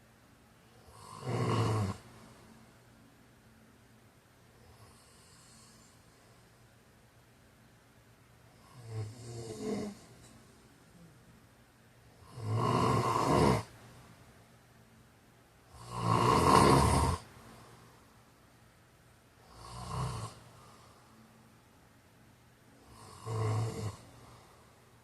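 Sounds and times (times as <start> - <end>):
man snoring: 0.8 - 2.0, 4.7 - 6.0, 8.6 - 10.3, 12.2 - 13.7, 15.7 - 17.3, 19.4 - 20.4, 22.8 - 24.2.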